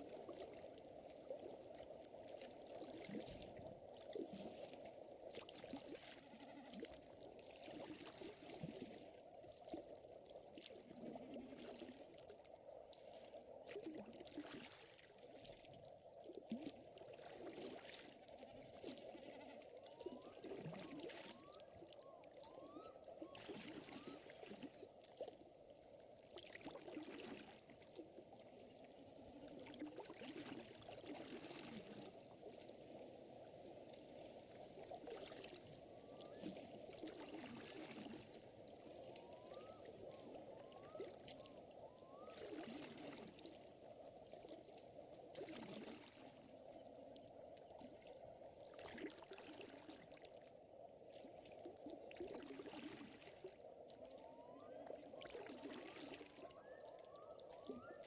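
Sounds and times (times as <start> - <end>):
gentle trickling water: 0.0 - 58.0.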